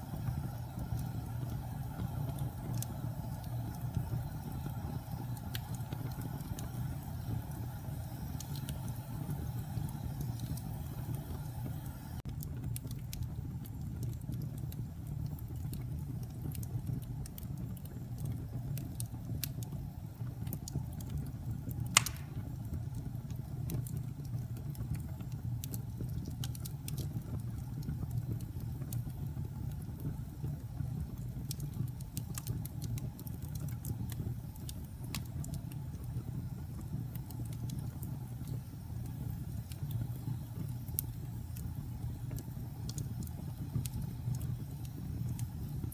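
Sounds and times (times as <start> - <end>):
fire rumbling and crackling: 0.0 - 45.9
loud pop of fire: 21.8 - 22.8.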